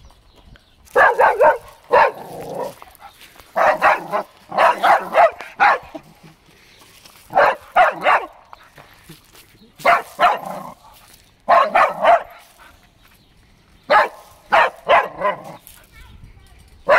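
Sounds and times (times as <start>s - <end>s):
dog barking: 0.9s - 2.8s, 3.6s - 6.0s, 7.3s - 8.4s, 9.8s - 10.8s, 11.5s - 12.5s, 13.9s - 15.6s.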